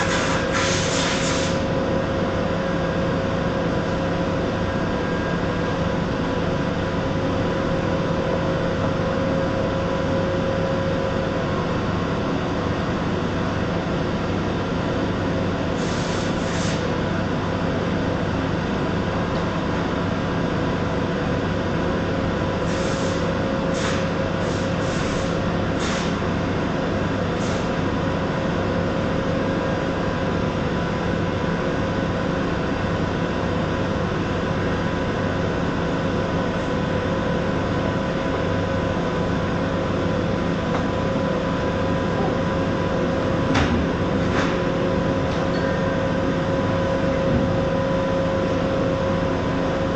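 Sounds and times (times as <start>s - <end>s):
welder humming and hissing: 0.0s - 1.7s.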